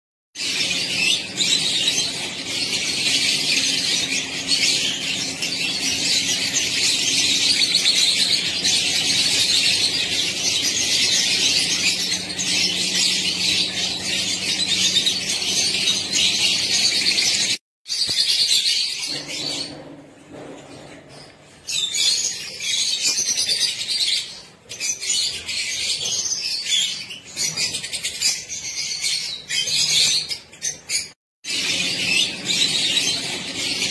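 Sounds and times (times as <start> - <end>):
budgerigars chattering: 0.4 - 17.6, 31.5 - 33.9.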